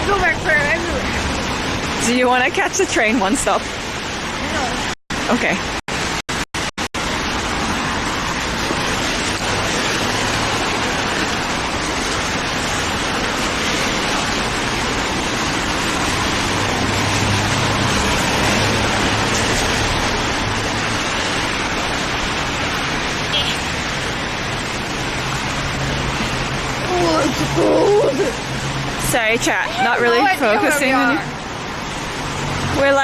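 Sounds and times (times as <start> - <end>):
wet street traffic: 0.0 - 33.0
rain hiss: 6.9 - 33.0.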